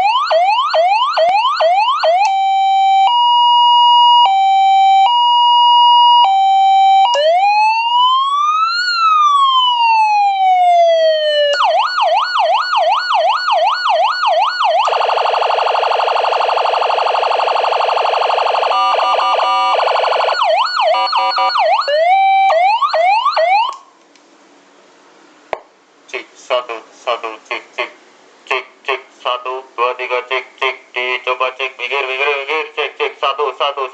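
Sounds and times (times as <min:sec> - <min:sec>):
electronic police siren: 0:00.0 - 0:23.9.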